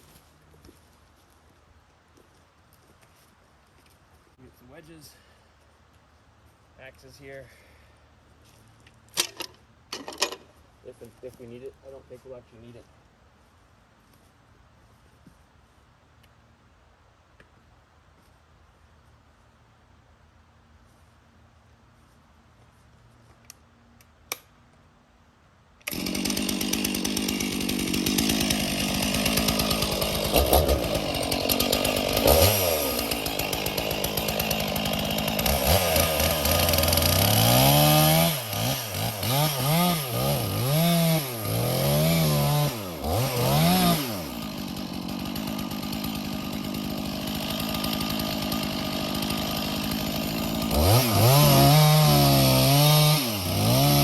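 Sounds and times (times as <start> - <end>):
chainsaw running: 9.2 - 12.8, 25.8 - 54.0.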